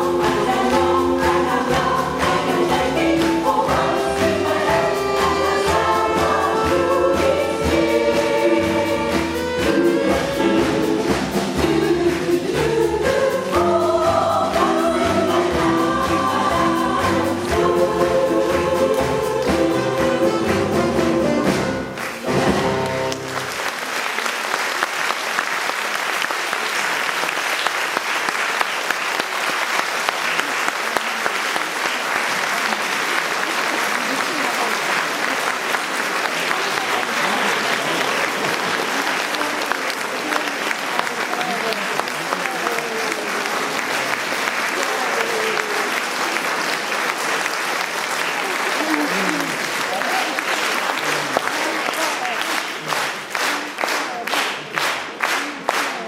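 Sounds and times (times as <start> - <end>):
jazz vocal chorus with band: 0.0 - 23.1
audience applauding: 0.0 - 56.0.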